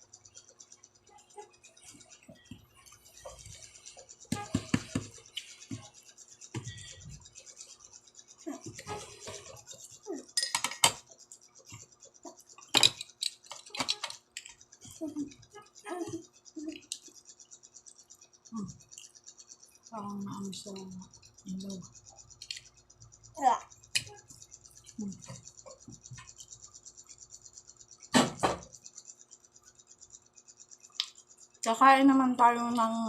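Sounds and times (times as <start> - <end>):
cutlery clinking on plate: 10.4 - 11.0.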